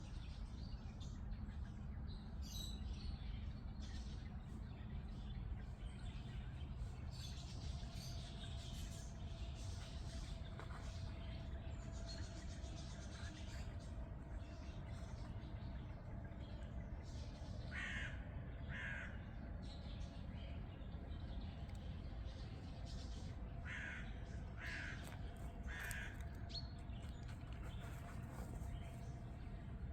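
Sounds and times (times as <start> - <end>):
steady low rumble: 0.0 - 29.9
harsh caw-like bird calls: 17.7 - 19.4, 23.6 - 26.6.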